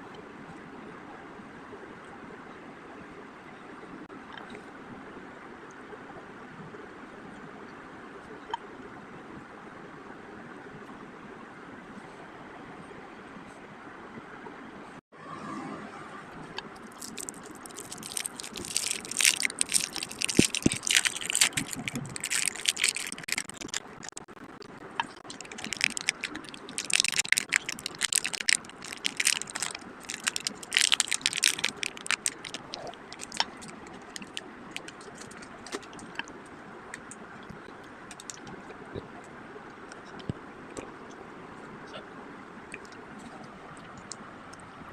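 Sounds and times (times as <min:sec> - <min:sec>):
plastic wrappers crinkling: 0:16.8 - 0:24.5, 0:25.2 - 0:36.2.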